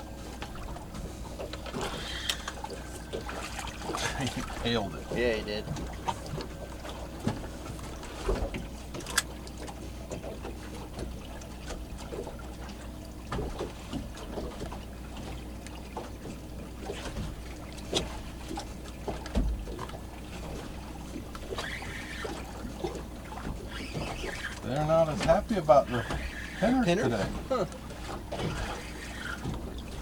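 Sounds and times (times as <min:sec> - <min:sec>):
low steady rumble: 0:00.0 - 0:10.5
water slapping boat hull: 0:00.0 - 0:30.0.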